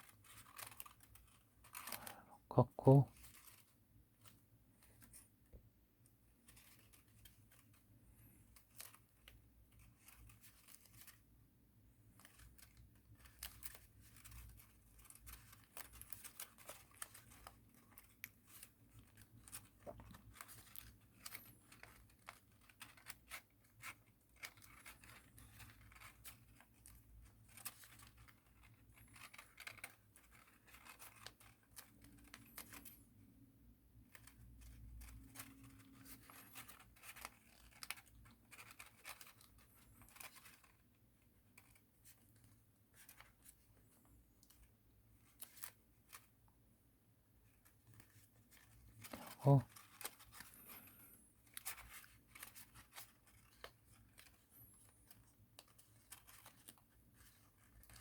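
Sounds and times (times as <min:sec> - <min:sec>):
paper crinkling: 0:00.0 - 0:58.0.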